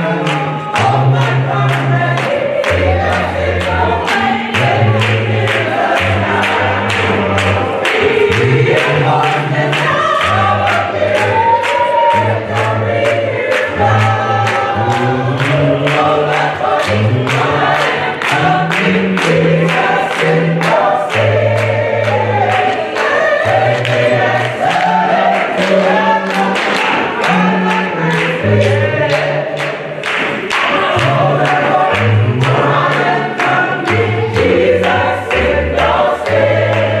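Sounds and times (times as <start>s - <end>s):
bass line: 0.0s - 26.6s
gospel choir singing: 0.0s - 37.0s.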